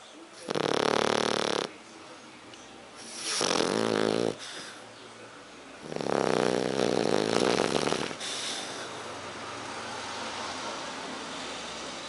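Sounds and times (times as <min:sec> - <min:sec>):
dog snoring: 0:00.4 - 0:01.8, 0:03.0 - 0:04.8, 0:05.8 - 0:08.9
dog breathing: 0:03.0 - 0:04.9, 0:05.8 - 0:09.2.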